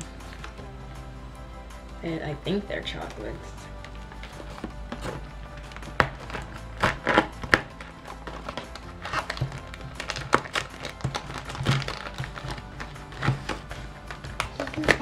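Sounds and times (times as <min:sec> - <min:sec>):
background music: 0:00.0 - 0:15.0
cardboard box clicking and crinkling: 0:04.3 - 0:15.0.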